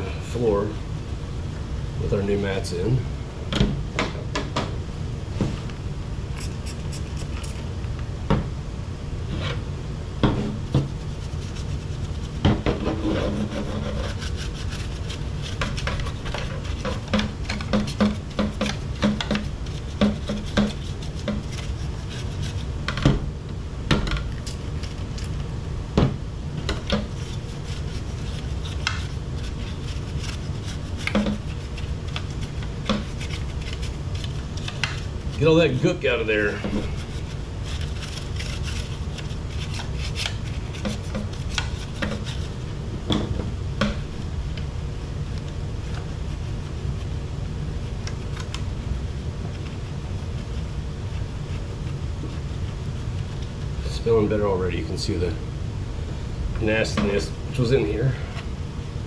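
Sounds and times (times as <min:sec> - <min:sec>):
steady low hum: 0:00.0 - 0:59.0
scrubbing on plastic: 0:10.7 - 0:22.8, 0:26.8 - 0:42.7, 0:45.8 - 0:54.0.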